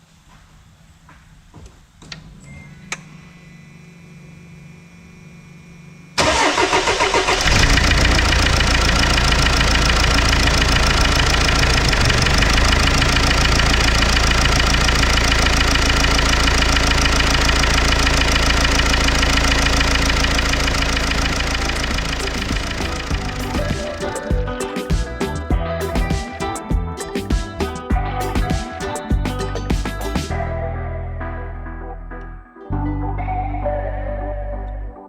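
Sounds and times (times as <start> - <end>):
diesel engine idling: 4.0 - 26.0
starter motor cranking: 6.2 - 25.4
engine knock: 7.2 - 23.8.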